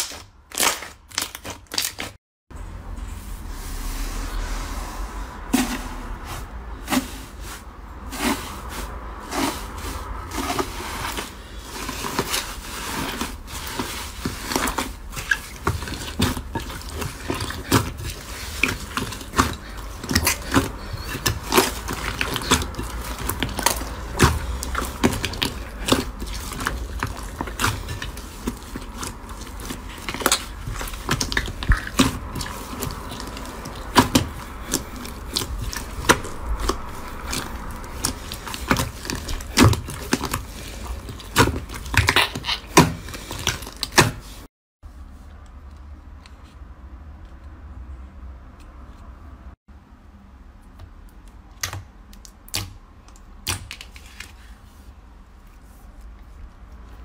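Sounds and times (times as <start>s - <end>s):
slime squishing with sticky clicks: 50.6s - 54.0s.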